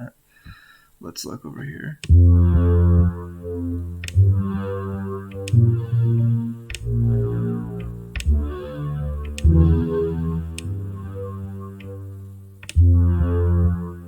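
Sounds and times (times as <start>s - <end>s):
sci-fi synthesizer notes: 2.0s - 14.0s
sharp click: 6.7s - 6.9s, 11.8s - 12.8s.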